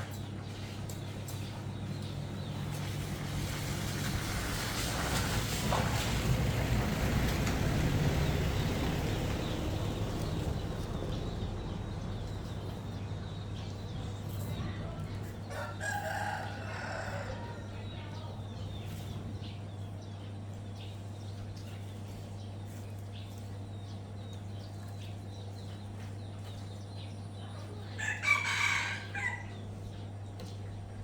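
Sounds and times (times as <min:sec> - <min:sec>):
rooster crowing: 0:15.5 - 0:17.8, 0:28.0 - 0:29.6.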